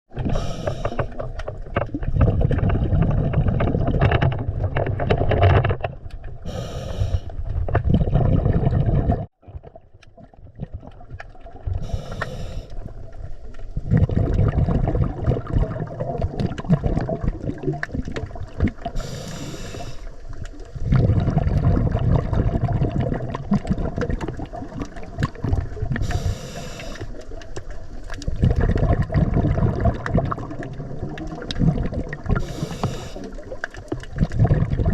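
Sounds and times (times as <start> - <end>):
exhaled air bubbling: 0.1 - 34.9
regulator hissing inhale: 0.3 - 1.2, 6.4 - 7.4, 11.8 - 13.0, 19.0 - 20.2, 26.0 - 27.3, 32.4 - 33.6.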